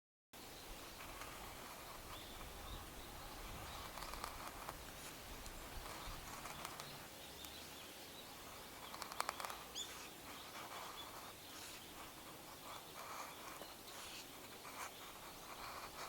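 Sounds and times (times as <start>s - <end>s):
sharp crackles: 3.6s - 7.8s, 8.4s - 16.0s.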